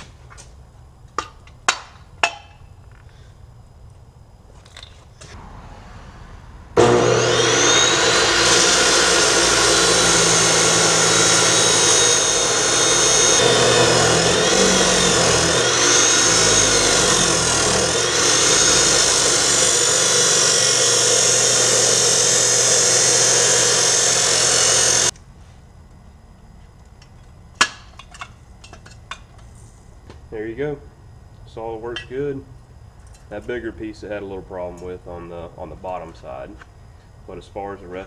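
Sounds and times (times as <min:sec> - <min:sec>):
chop saw cutting steel: 0:06.8 - 0:25.1.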